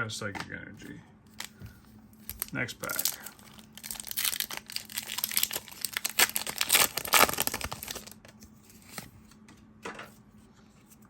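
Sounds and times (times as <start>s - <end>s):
foil wrapper crinkling and tearing: 1.4s - 9.1s.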